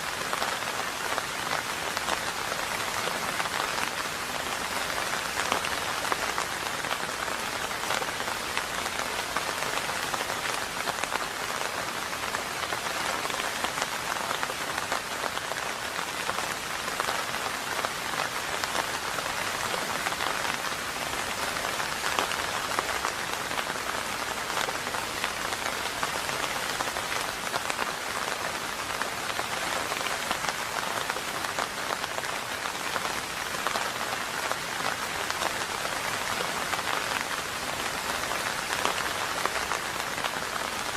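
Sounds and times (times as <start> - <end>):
rain on a hard surface: 0.0 - 40.9.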